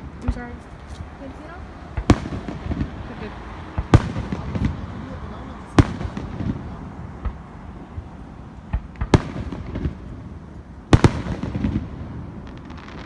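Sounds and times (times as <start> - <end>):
fireworks bangs: 0.0 - 13.0
fireworks crackling: 0.0 - 13.0
fireworks pops: 1.9 - 4.8, 8.7 - 10.1.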